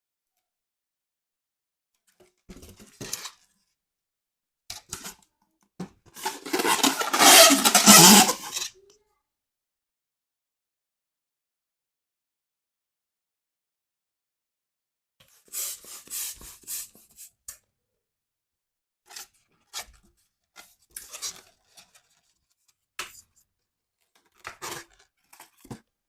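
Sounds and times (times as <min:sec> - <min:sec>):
balloon rubber rubbing and scraping: 0:06.2 - 0:08.7.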